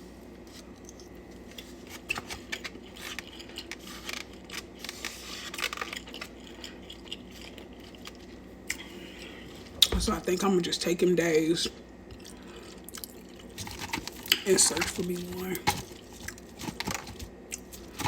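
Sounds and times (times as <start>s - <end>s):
faint steady hum: 0.0s - 18.0s
chewing with mouth clicks: 2.4s - 4.8s, 5.6s - 9.4s, 12.1s - 14.4s.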